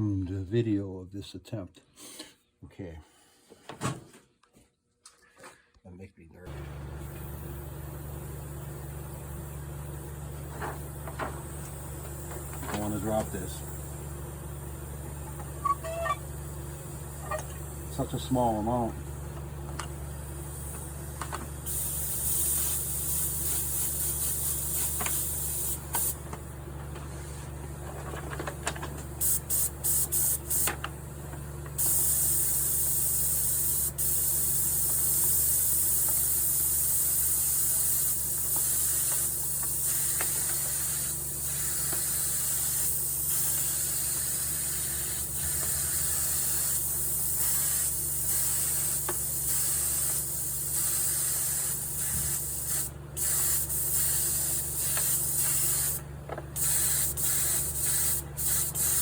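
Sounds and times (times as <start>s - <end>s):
steady low hum: 6.4s - 59.0s
spray gun hissing: 21.7s - 26.2s, 29.2s - 30.7s, 31.8s - 56.0s, 56.6s - 59.0s.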